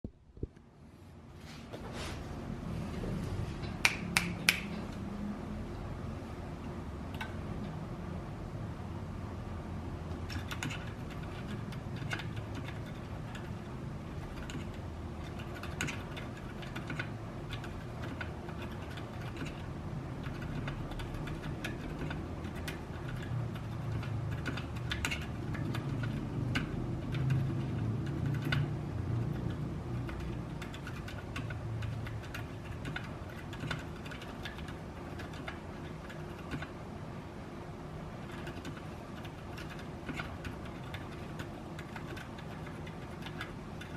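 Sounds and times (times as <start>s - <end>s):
soft mechanical keyboard typing: 10.1s - 36.8s, 38.2s - 43.9s.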